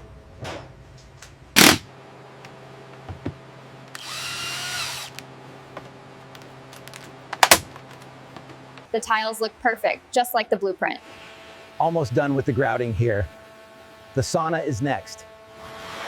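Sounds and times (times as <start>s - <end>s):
power drill whirring: 4.0s - 5.2s.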